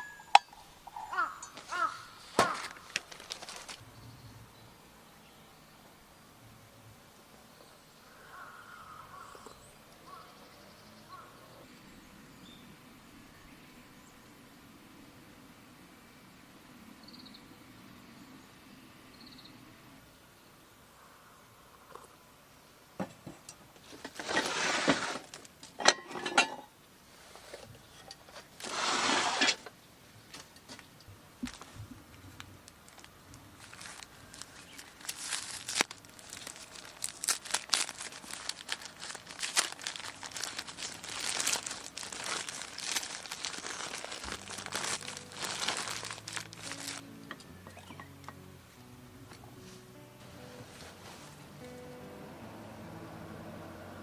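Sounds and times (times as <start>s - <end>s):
crinkling and rustling material: 1.0s - 3.8s, 31.4s - 47.4s
soft music: 41.9s - 54.0s.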